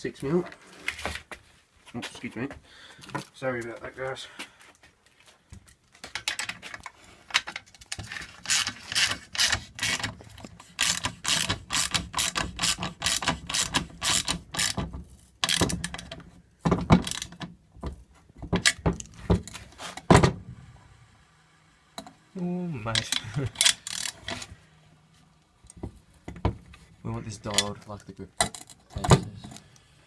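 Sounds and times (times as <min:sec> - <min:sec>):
ratchet wrench clicking: 0:10.8 - 0:14.8, 0:23.0 - 0:24.4.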